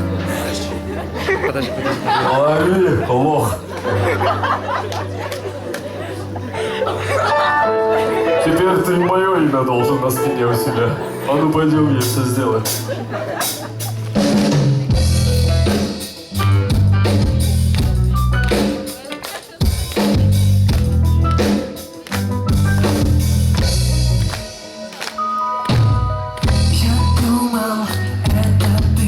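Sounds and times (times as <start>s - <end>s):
short melodic notes: 7.2s - 13.2s
heavy bass line: 11.8s - 18.6s, 25.7s - 27.5s
drum kit: 12.0s - 29.0s.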